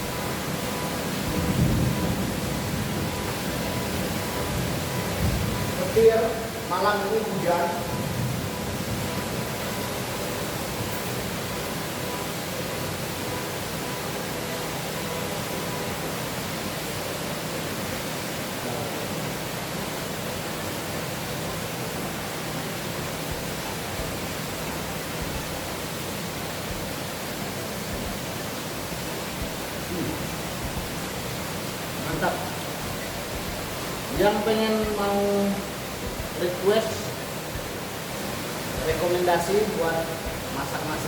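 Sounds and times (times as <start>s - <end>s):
rain falling steadily: 0.0s - 41.0s.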